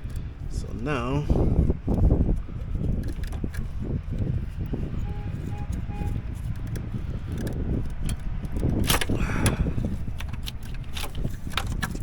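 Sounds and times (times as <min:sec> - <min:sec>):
steady low rumble: 0:00.0 - 0:12.0
plastic hose connectors clicking: 0:05.6 - 0:12.0.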